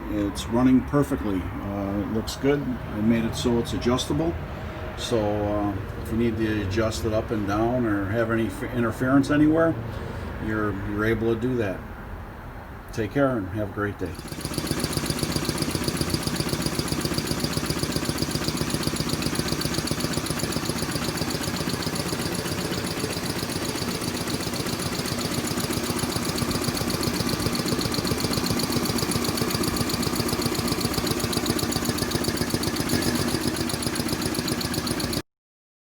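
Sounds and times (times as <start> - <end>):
piston air compressor running: 14.0 - 35.2.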